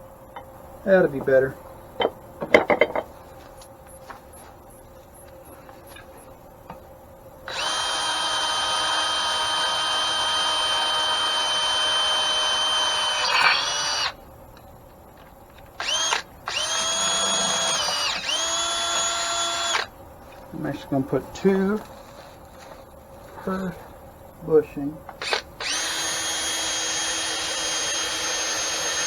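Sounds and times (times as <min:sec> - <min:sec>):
electric drill whining: 0:07.5 - 0:14.2, 0:15.8 - 0:19.9, 0:25.2 - 0:29.0.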